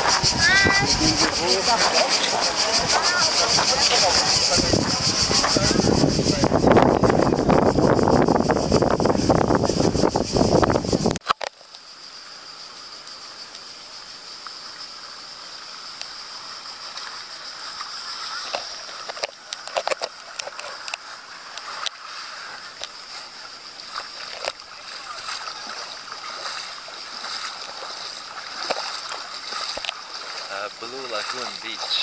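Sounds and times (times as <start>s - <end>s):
distant voices of bathers: 0.0s - 6.6s
water splashing: 0.0s - 7.8s, 13.0s - 32.0s.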